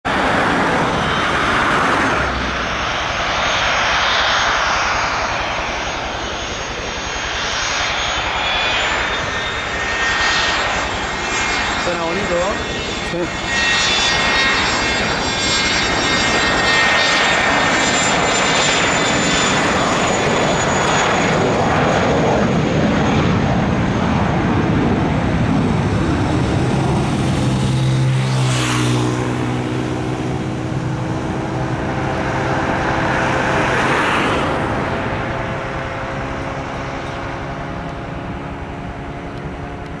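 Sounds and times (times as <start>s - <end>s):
jet engines roaring: 0.0s - 40.0s
high fan whine: 23.4s - 40.0s.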